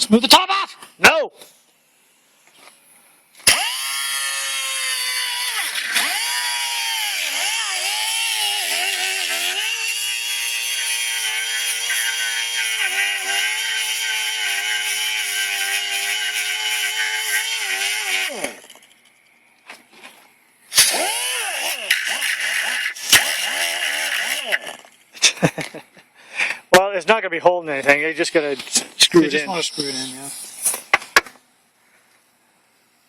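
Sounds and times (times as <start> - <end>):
electric grinder grinding metal: 3.4 - 18.9, 20.7 - 24.9.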